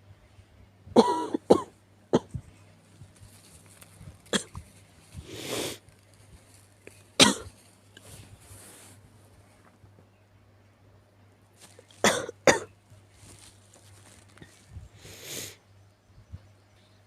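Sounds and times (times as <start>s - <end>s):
person coughing: 1.0s - 2.4s, 4.3s - 4.6s, 7.2s - 7.5s, 12.0s - 12.7s
noisy breath: 5.1s - 5.9s, 14.4s - 15.6s.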